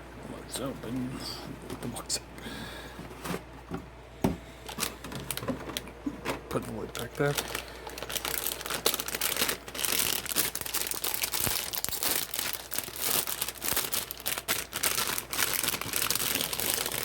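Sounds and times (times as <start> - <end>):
plastic packaging crinkling: 4.6 - 17.0.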